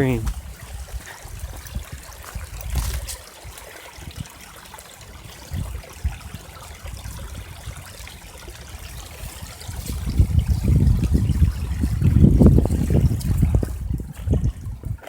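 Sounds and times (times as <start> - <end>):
stream trickling: 0.0 - 15.0.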